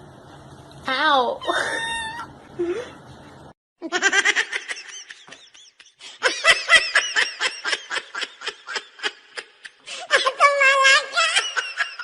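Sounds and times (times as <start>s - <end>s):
person giggling: 1.5s - 2.0s.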